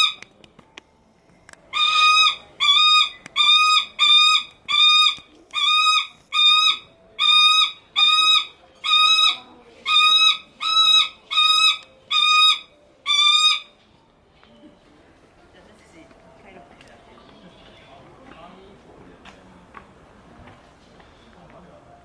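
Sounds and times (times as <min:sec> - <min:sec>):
falcon calling: 0:01.7 - 0:13.7.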